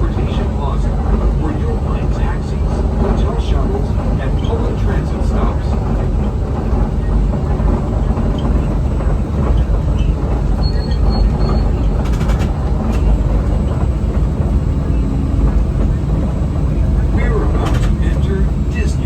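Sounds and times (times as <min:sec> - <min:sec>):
monorail rumble: 0:00.0 - 0:19.0.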